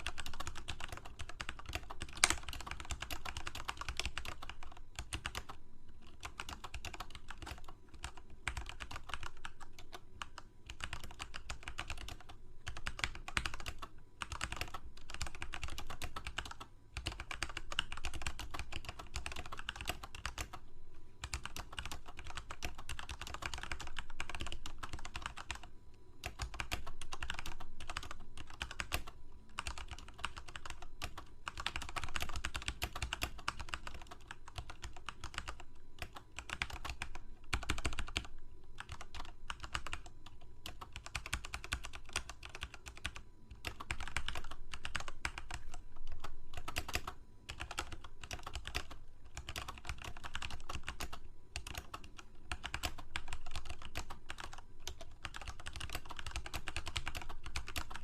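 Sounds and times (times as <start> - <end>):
typing on computer keyboard: 0.0 - 20.6, 21.2 - 58.0.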